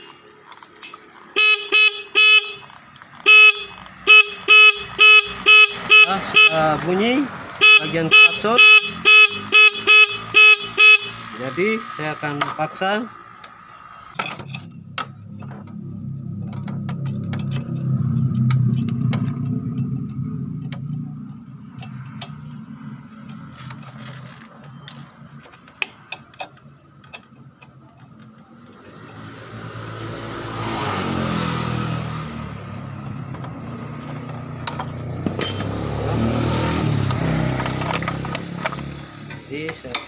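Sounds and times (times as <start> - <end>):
small metallic clicks: 2.6 - 4.0, 23.2 - 29.4.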